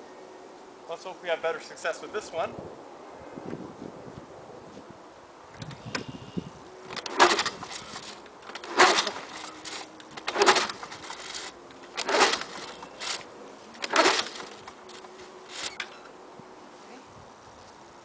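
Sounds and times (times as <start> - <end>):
mower pull-starter whirring: 6.9 - 16.1.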